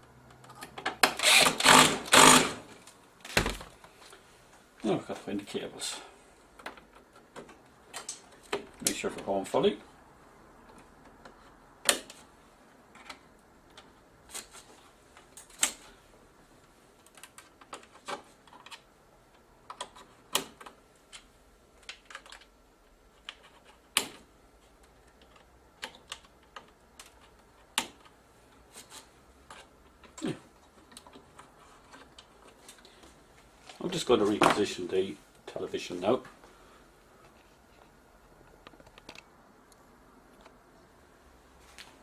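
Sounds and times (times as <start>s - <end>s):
cables being handled: 6.4s - 42.0s
cable connectors clicking into sockets: 23.2s - 28.1s.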